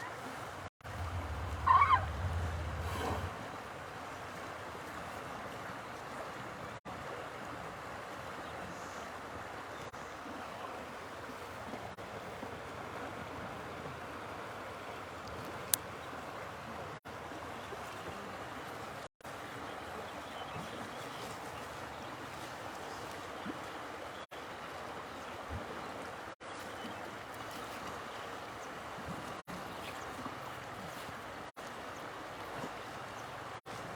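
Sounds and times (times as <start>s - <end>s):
flowing water rushing: 0.0s - 33.9s
steady outdoor rushing noise: 0.8s - 3.4s.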